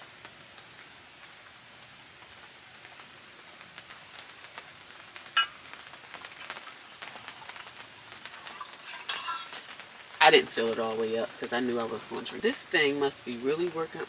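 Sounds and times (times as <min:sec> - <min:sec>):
rain pattering on a tent: 0:00.0 - 0:14.0
metallic clink of steel cup: 0:08.5 - 0:09.6.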